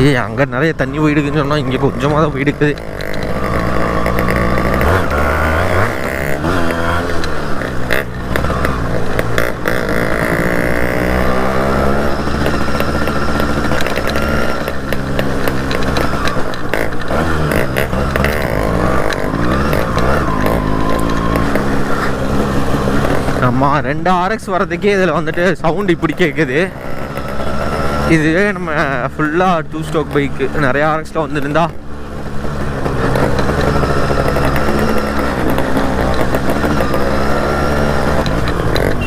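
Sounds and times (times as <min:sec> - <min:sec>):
two-stroke motorcycle engines: 0:00.0 - 0:39.0.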